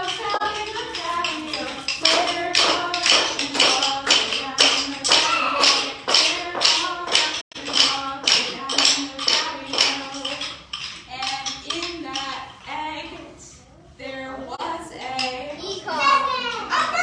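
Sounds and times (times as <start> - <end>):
person singing: 0.0 - 10.5.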